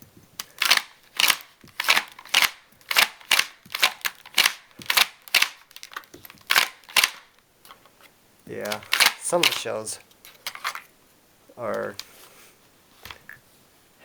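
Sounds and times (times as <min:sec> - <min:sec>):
toy shotgun pump clacking: 0:00.4 - 0:07.4, 0:08.6 - 0:10.8.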